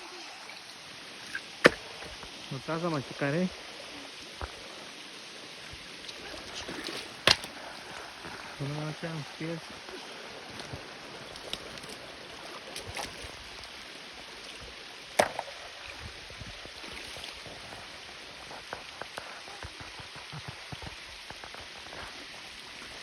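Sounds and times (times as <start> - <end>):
waterfall rushing: 0.0 - 15.7.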